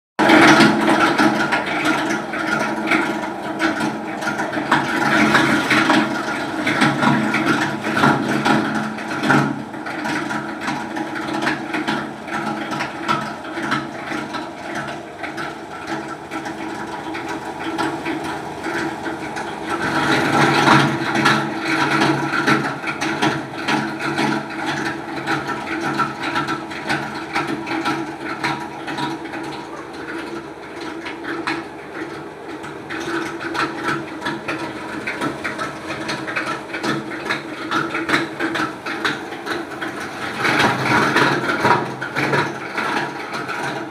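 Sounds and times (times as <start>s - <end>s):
motor hum: 0.2s - 43.9s.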